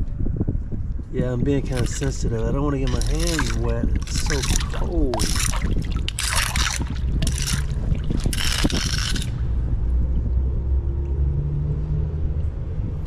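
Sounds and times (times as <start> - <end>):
low rumble: 0.0 - 13.0
creek water splashing: 1.7 - 9.6.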